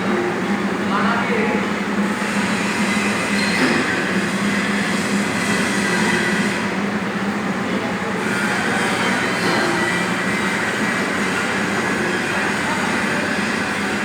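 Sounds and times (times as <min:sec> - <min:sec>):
surface grinder humming: 0:08.0 - 0:14.0.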